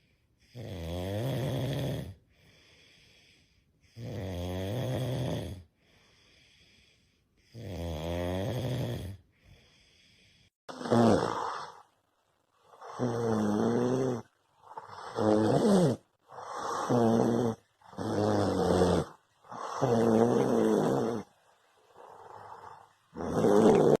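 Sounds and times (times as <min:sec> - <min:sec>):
loud harsh snoring: 0:00.5 - 0:02.2, 0:03.9 - 0:05.7, 0:07.4 - 0:09.2, 0:10.2 - 0:12.0, 0:12.7 - 0:24.0.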